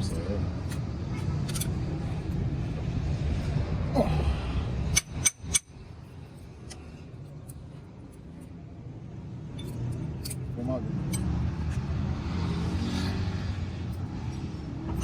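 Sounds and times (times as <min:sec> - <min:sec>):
sharp metallic clinks: 0:09.5 - 0:11.8.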